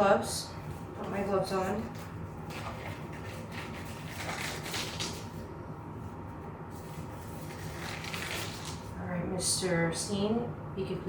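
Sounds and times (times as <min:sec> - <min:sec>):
steady room hum: 0:00.0 - 0:11.0
rustling of exam gloves: 0:00.6 - 0:09.0.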